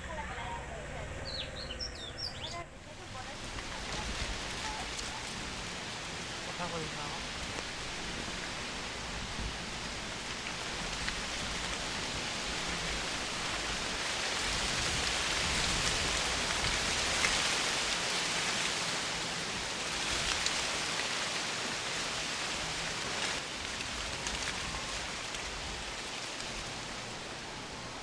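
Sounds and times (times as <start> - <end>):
steady rain hiss: 0.0 - 28.0.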